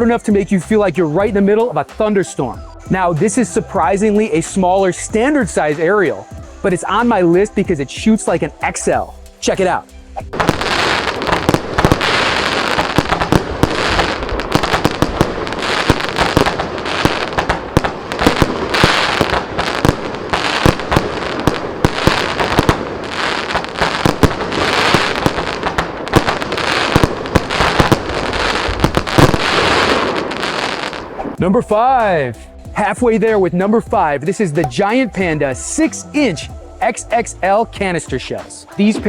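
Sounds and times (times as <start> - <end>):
firework bangs: 10.3 - 31.4
fireworks rushing hiss: 10.3 - 31.4.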